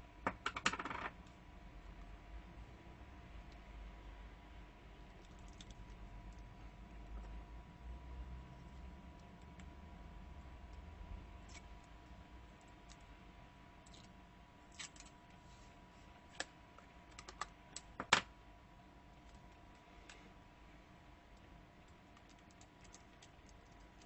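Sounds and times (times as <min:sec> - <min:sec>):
faint steady hum: 0:00.0 - 0:24.0
tape clicks and ticks: 0:21.3 - 0:24.0.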